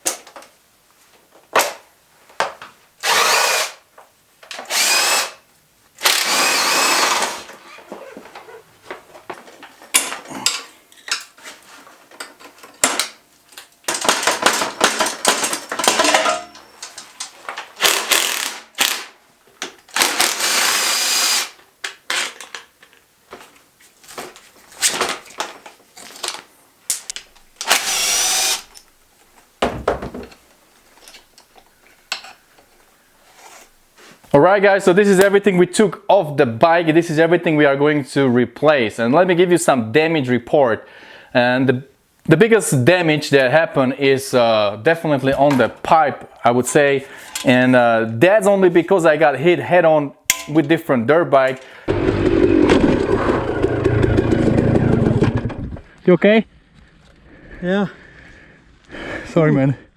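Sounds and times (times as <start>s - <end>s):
tools and parts clanking: 9.8s - 19.1s, 46.7s - 47.6s, 50.3s - 50.8s
power driver spinning: 27.6s - 28.7s.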